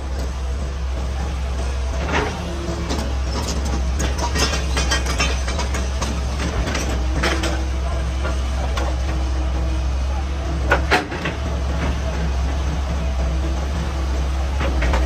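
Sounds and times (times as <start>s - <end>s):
rock and steel clattering: 0.0s - 9.9s
excavator diesel engine running: 0.0s - 15.0s.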